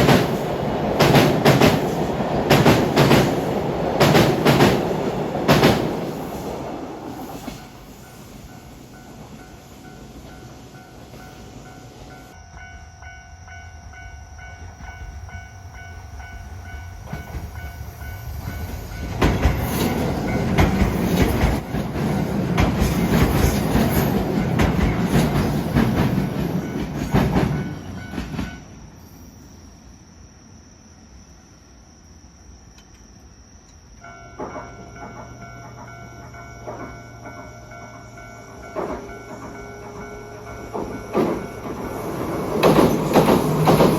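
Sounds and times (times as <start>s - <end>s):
train wheels clacking on rails: 0.0s - 12.4s, 16.2s - 28.7s, 34.0s - 43.9s.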